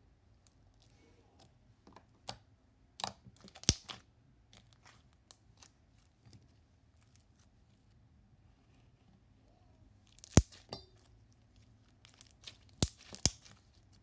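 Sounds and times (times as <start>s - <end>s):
slime squished by hand: 12.0s - 13.7s.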